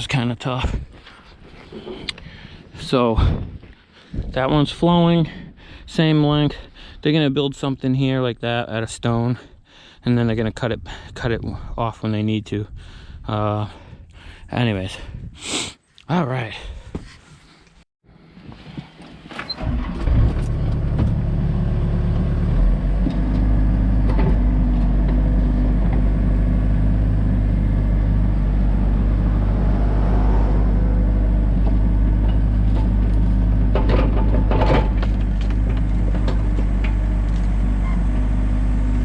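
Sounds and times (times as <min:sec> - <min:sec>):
excavator diesel engine running: 0:19.6 - 0:39.0
knocks and clanks: 0:23.0 - 0:26.2, 0:31.6 - 0:37.1.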